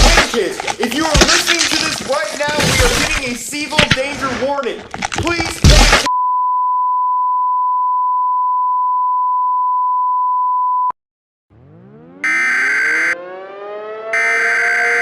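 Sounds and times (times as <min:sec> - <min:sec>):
siren winding up: 0:11.5 - 0:15.0.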